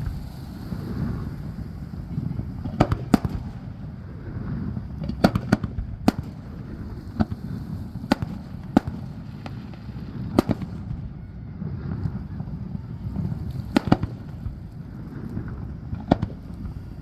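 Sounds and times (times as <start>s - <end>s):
firework shells bursting: 0.0s - 11.1s.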